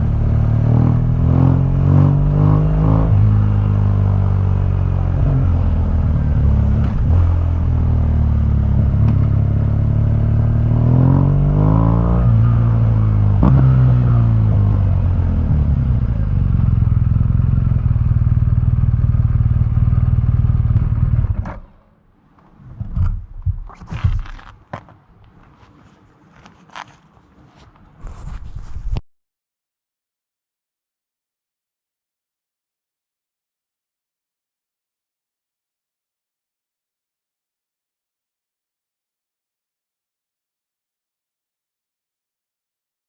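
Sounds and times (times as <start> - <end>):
motorcycle engine revving: 0.0 - 21.6.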